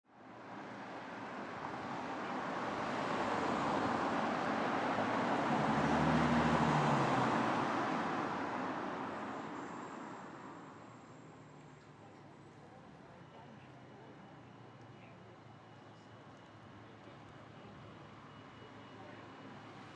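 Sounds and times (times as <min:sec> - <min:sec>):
vehicle driving past: 0:02.8 - 0:10.7.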